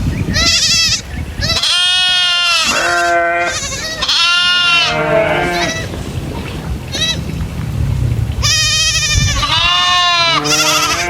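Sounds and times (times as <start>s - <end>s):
goats bleating: 0.3s - 6.0s, 6.9s - 7.3s, 8.4s - 11.0s.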